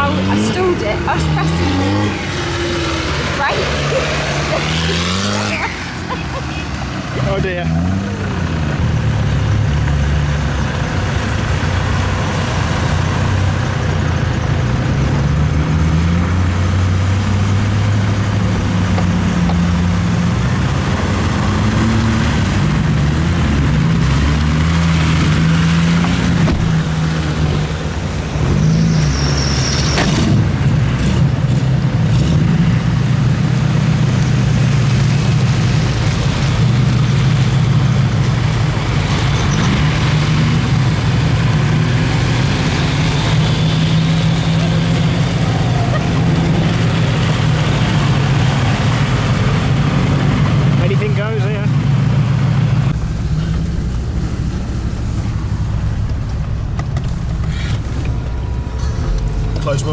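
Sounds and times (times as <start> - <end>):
diesel engine running under load: 0.0 - 59.9
short high squeak: 28.6 - 30.3.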